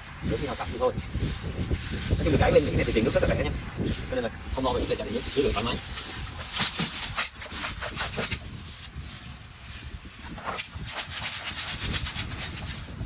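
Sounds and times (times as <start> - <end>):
water spraying and hissing: 0.0 - 13.0
crawfish clicking and rattling: 0.4 - 8.8.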